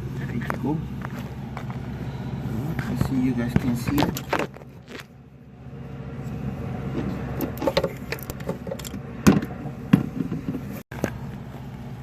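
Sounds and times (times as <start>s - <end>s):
steady low hum: 0.0s - 12.0s
metal parts handled in engine bay: 7.0s - 11.3s.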